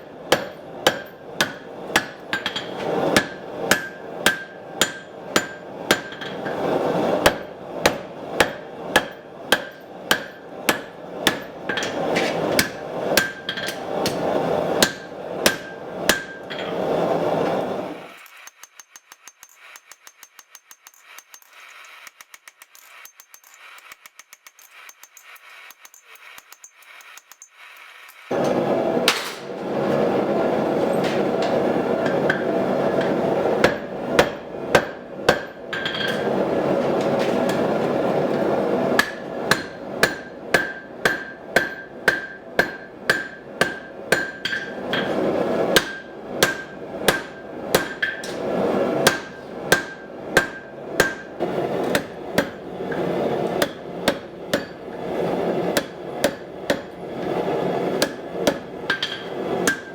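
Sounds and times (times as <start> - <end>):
hammer striking steel on anvil: 0.0 - 16.8, 30.6 - 59.9.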